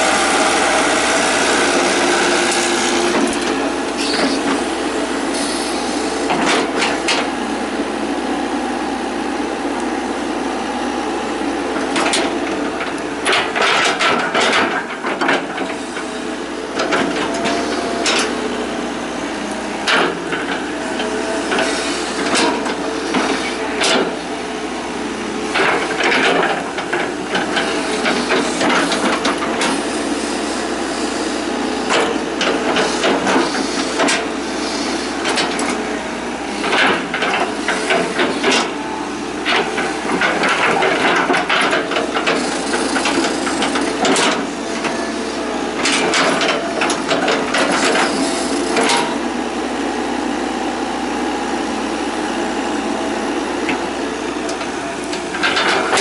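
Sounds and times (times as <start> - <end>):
excavator diesel engine running: 0.0 - 56.0
knocks and clatter: 13.3 - 15.6.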